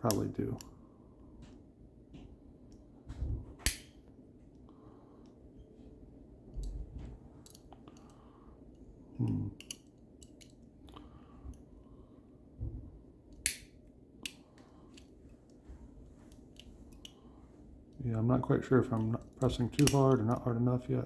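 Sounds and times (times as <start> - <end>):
lock picks clicking and scraping: 9.2 - 10.6.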